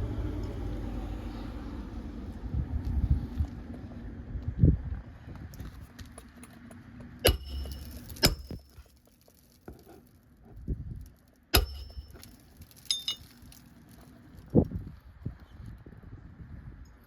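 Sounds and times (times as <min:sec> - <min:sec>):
hammer striking metal tool: 0:07.2 - 0:08.7, 0:11.6 - 0:12.3.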